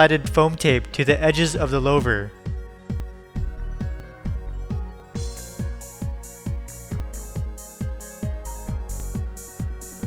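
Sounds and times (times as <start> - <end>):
electronic music: 0.0 - 10.0
kick drum: 2.0 - 10.0.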